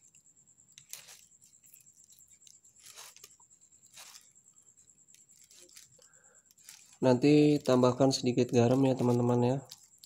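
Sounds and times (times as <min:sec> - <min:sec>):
scraping ginger skin: 0:00.0 - 0:10.0.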